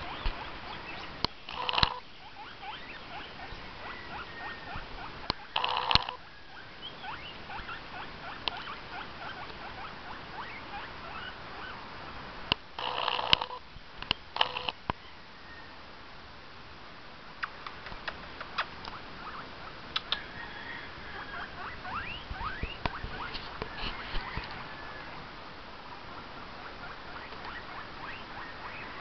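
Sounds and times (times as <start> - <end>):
guinea pig louder call: 0.0 - 11.8, 12.8 - 13.6, 18.6 - 24.4, 26.6 - 29.0
guinea pig squeaking: 0.0 - 11.8, 12.8 - 13.6, 14.4 - 14.8, 18.6 - 20.2, 21.2 - 24.4, 26.6 - 29.0.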